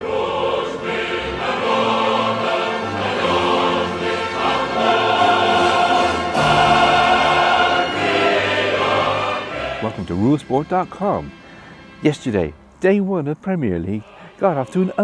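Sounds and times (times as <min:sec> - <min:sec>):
choir singing held chords: 0:00.0 - 0:15.0.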